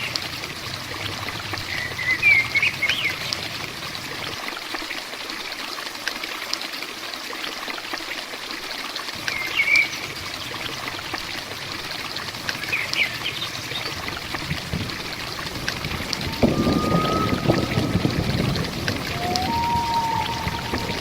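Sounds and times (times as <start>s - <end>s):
heavy rain falling: 0.0s - 5.2s, 9.1s - 21.0s
bird chirping: 16.0s - 21.0s.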